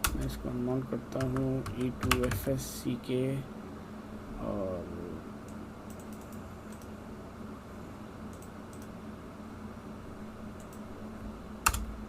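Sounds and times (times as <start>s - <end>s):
low hum and hiss: 0.0s - 12.0s.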